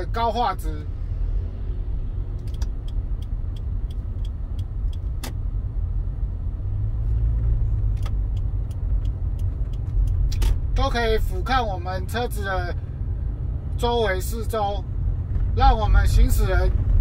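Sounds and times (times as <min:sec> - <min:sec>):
road and engine rumble in car: 0:00.0 - 0:17.0
sharp clicks: 0:02.4 - 0:05.4, 0:07.9 - 0:10.6
light ticking: 0:08.0 - 0:10.5.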